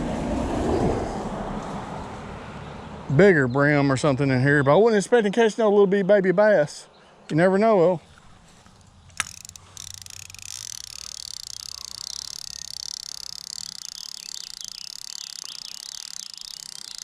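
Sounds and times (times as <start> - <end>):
frogs and insects calling: 8.8 - 17.0
sharp click: 8.8 - 17.0.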